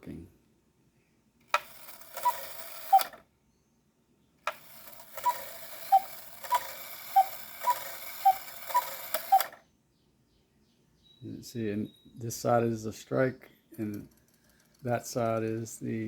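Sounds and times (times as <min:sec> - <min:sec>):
clock mechanism whirring and clicking: 0:01.5 - 0:03.2, 0:04.5 - 0:09.6
cuckoo clock call: 0:01.6 - 0:03.2, 0:04.5 - 0:09.6.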